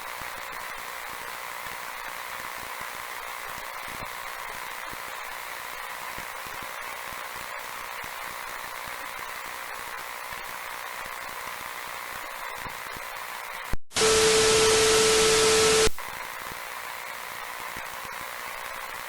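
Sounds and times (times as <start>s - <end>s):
static hiss: 10.3s - 19.0s
harsh static burst: 13.9s - 16.1s.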